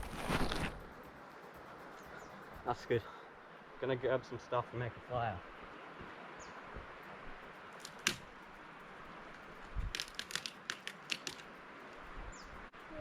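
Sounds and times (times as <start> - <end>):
twigs crackling and snapping: 7.7 - 8.3, 9.3 - 12.0.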